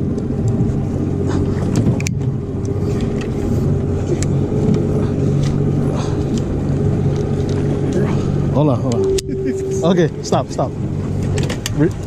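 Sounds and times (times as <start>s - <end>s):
boat motor humming: 0.0s - 12.0s.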